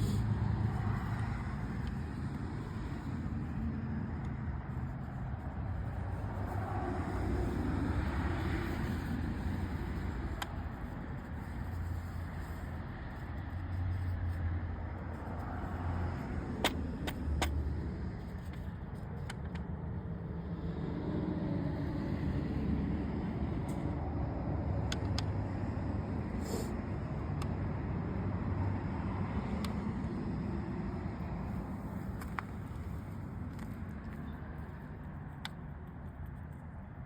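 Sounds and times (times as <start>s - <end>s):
low vehicle rumble: 0.0s - 36.1s.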